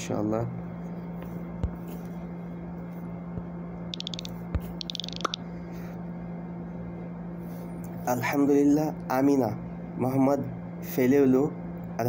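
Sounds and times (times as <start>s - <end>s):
steady low hum: 0.0s - 12.0s
rapid small clicks: 4.0s - 5.4s.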